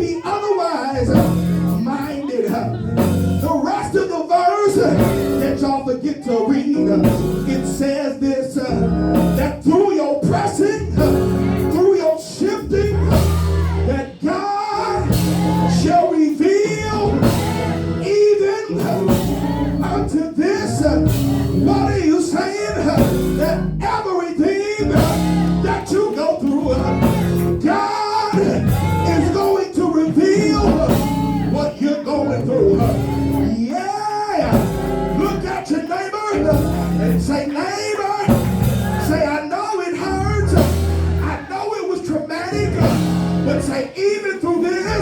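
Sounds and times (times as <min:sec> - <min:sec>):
song with singing and a beat: 0:00.0 - 0:45.0.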